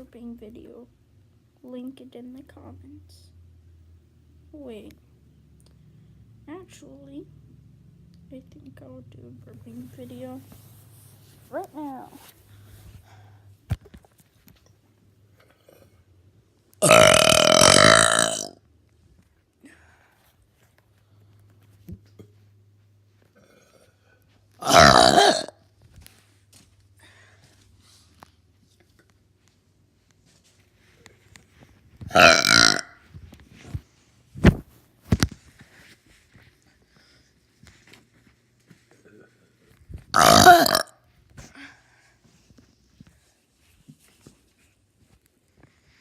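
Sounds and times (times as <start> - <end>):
person burping: 16.8 - 18.6, 23.4 - 24.0, 24.6 - 25.6, 32.1 - 33.0, 40.2 - 40.9.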